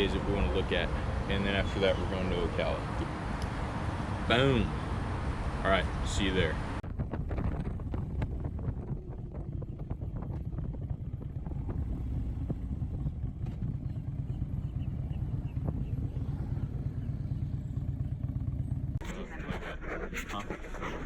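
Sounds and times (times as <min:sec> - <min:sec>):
motorcycle engine running: 0:06.7 - 0:19.0.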